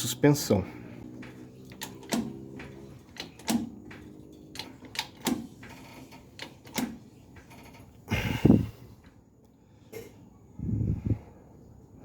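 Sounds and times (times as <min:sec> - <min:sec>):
tools knocking on metal parts: 0:01.1 - 0:08.0.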